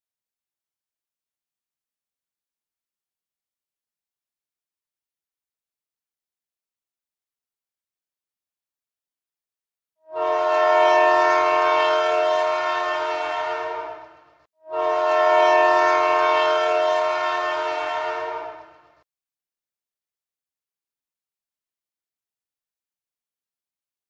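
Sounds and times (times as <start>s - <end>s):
train horn blasts: 10.0s - 19.0s.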